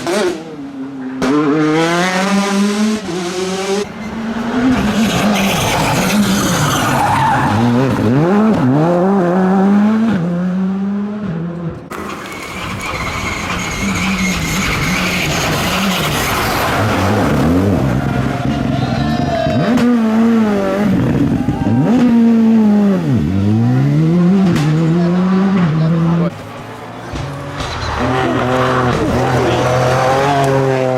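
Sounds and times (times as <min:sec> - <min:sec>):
rally car engines at full throttle: 0:00.0 - 0:30.9
tyres squealing: 0:03.8 - 0:07.9.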